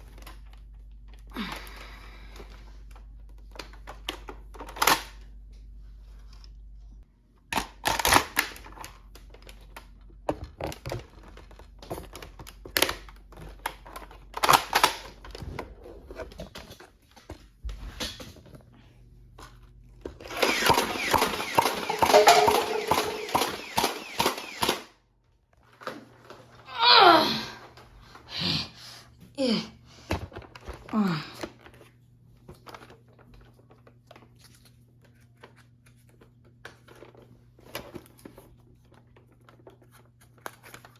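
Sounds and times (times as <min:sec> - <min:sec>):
toy blaster plastic clicks: 0:20.3 - 0:24.9.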